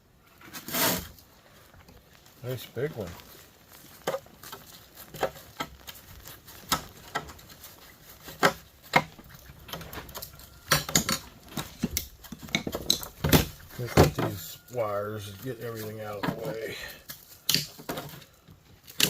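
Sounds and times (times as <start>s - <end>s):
hand tools clicking and clinking: 4.0s - 19.0s.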